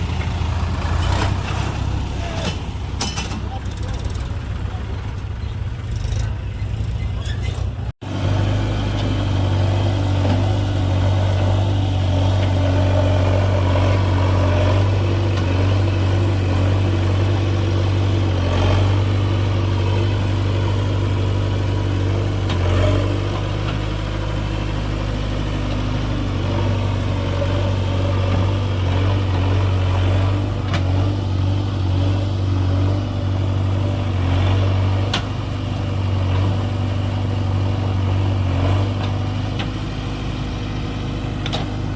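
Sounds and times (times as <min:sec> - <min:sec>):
diesel engine running: 0:00.0 - 0:41.9
metal clanks: 0:00.2 - 0:04.4.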